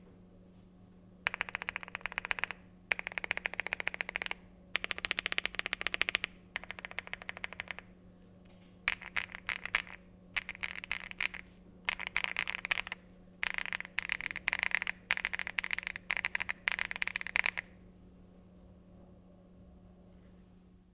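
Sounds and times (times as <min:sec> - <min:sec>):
steady low hum: 0:00.0 - 0:20.9
fast typing on mechanical keyboard: 0:01.3 - 0:07.9, 0:08.9 - 0:17.7.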